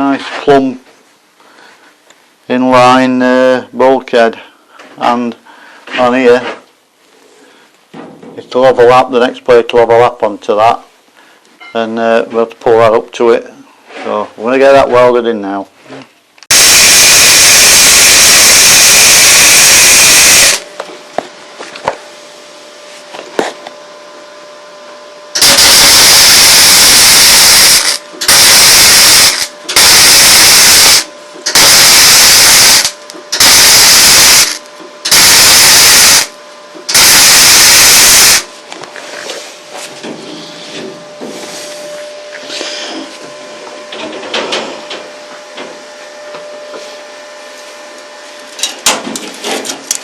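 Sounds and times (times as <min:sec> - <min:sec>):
welding arc sizzling: 0:16.5 - 0:20.7, 0:25.4 - 0:38.5.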